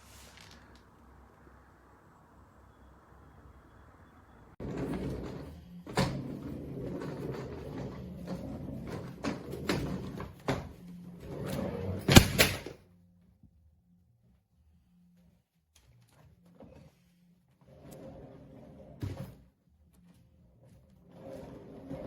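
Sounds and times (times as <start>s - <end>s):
suitcase rustling and clattering: 11.8s - 12.8s.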